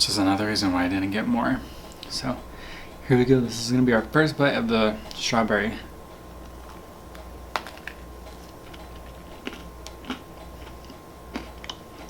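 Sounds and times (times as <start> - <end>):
chewing with crunches: 6.4 - 12.0.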